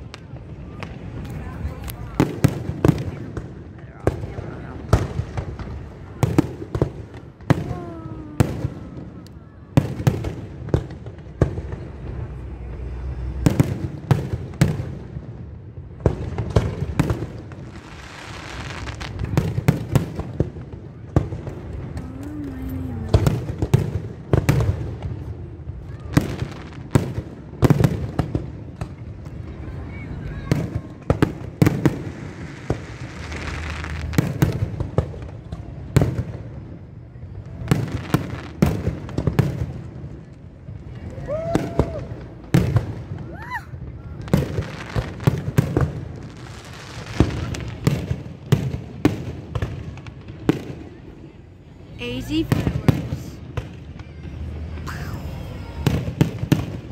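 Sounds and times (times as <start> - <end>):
fireworks banging: 0.0 - 51.1, 51.8 - 56.9
fireworks hissing crackle: 16.3 - 23.8, 25.2 - 36.0, 37.4 - 51.0
hissing crackle: 17.6 - 19.4, 32.1 - 34.2.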